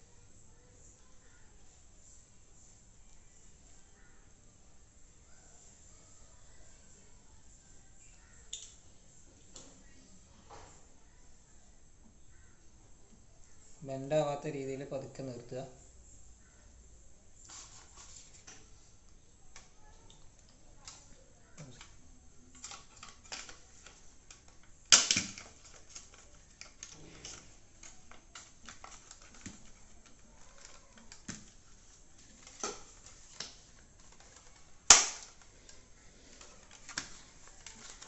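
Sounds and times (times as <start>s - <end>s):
sharp loud plastic snaps: 22.6s - 26.2s, 34.8s - 35.5s.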